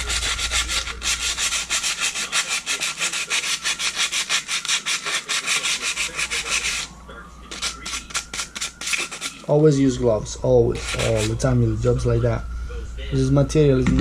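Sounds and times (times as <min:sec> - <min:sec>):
sandpaper rubbing on clutch lining: 0:00.0 - 0:06.9, 0:07.5 - 0:09.5, 0:10.8 - 0:11.4.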